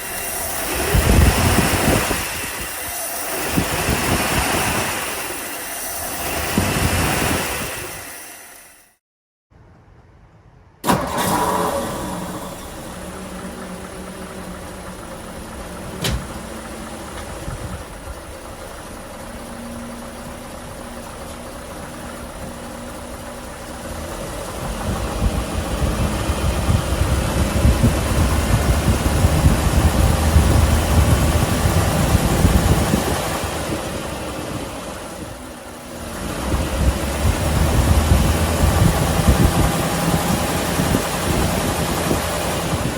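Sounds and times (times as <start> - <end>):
engine idling with knock: 12.6 - 42.9.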